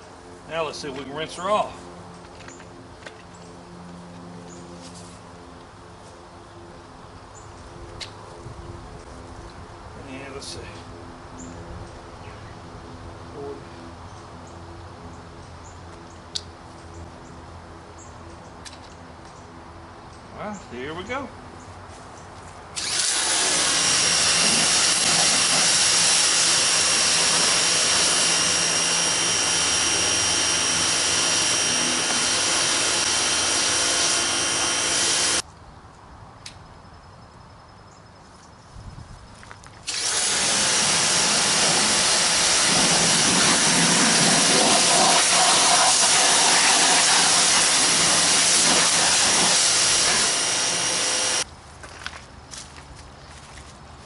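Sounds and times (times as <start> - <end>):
pressure washer motor whine: 22.8 - 35.4, 39.9 - 51.4
water spray hissing: 23.0 - 34.7, 39.9 - 51.4.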